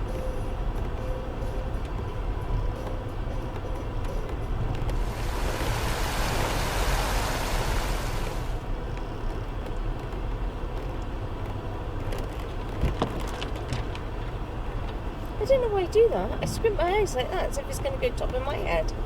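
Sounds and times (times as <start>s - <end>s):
car engine and tyres rumbling: 0.0s - 19.0s
loud rushing hiss: 4.9s - 8.6s.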